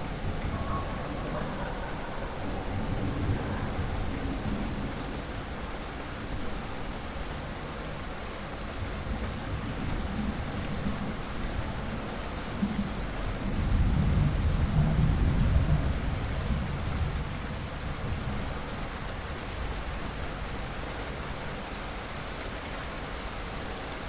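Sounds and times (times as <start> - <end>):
low rumble of thunder: 0.0 - 6.9, 8.6 - 20.6
steady rain falling: 0.0 - 24.0.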